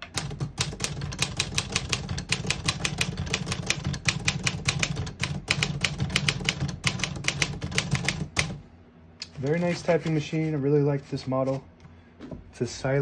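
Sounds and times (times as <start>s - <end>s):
typewriter typing: 0.0s - 8.6s.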